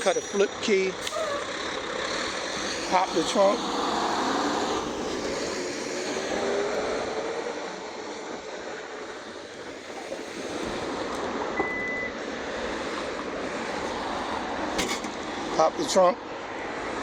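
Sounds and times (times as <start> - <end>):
road traffic: 0.0 - 17.0
vehicle engine revving: 1.2 - 7.6
short high beep: 11.6 - 12.2.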